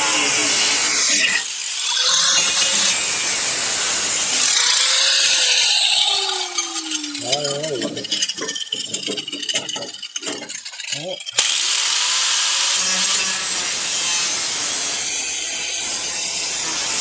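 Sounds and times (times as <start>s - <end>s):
grinder whine spinning down: 0.0s - 10.3s
grinder cutting sheet metal: 0.0s - 17.0s
metal knocks and clatter: 6.7s - 11.4s.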